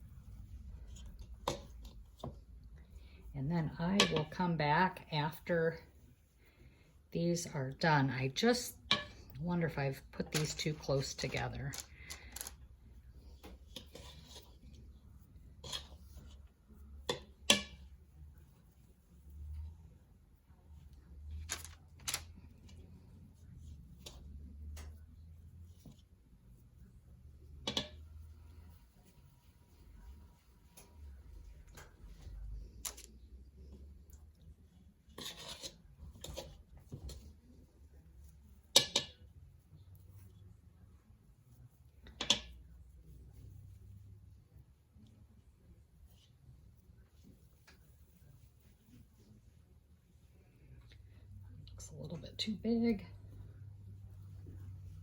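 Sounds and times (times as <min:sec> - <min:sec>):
light kitchen taps and rustles: 0:04.0 - 0:04.6.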